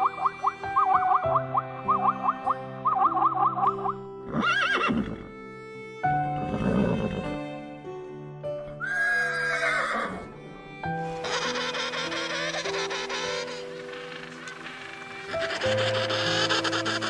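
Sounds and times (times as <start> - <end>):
background music: 0.0 - 17.0
animal calls: 11.1 - 17.0.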